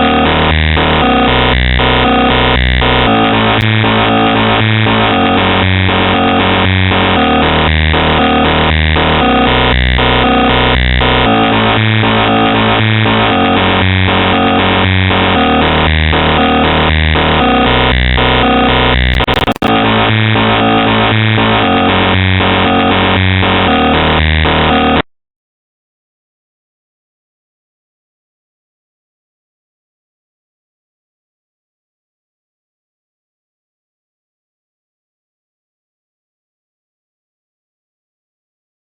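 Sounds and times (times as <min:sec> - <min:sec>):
harsh electronic noise music: 0:00.0 - 0:25.0.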